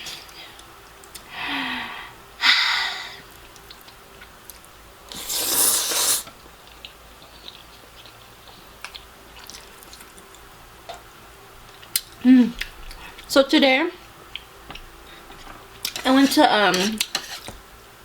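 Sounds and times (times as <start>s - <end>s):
quiet chewing: 3.3s - 4.7s, 6.6s - 11.0s
loud noodle slurp: 5.1s - 6.3s.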